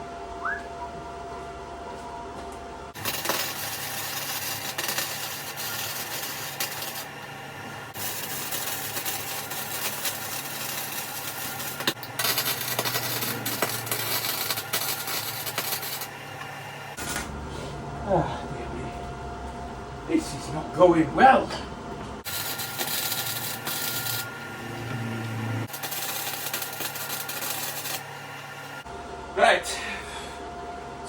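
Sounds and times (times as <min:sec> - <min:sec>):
arc welder crackling: 0:02.9 - 0:17.0, 0:22.2 - 0:28.9.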